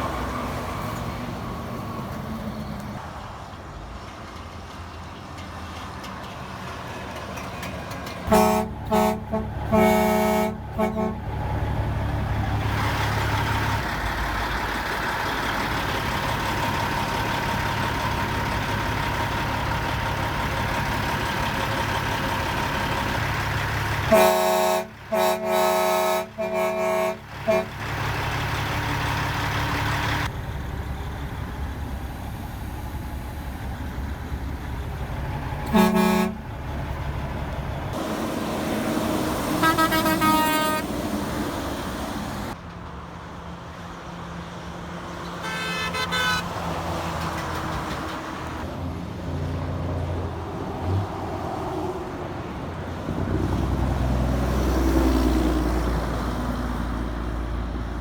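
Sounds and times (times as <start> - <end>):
heavy trucks rumbling past: 0.0 - 58.0
truck horns honking: 8.0 - 13.8, 21.2 - 30.3, 35.4 - 37.2, 37.9 - 42.6, 45.3 - 48.6.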